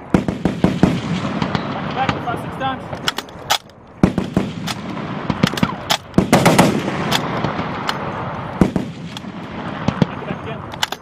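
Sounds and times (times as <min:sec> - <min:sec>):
machine-gun fire: 0:00.1 - 0:02.3, 0:04.0 - 0:10.2.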